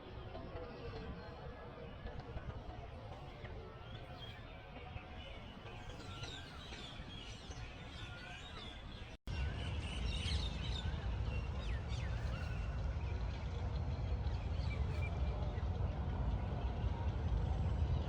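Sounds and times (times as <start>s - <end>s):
steady low rumble: 9.3s - 18.0s.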